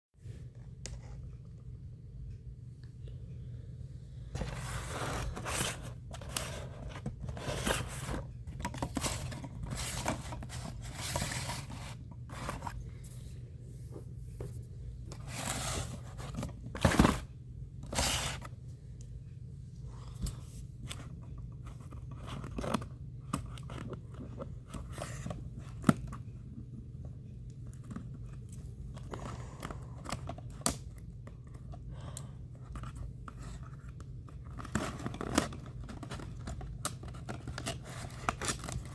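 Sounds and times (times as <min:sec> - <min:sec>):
cardboard and plastic crinkling: 0:04.4 - 0:12.9, 0:14.4 - 0:18.5, 0:32.8 - 0:38.9.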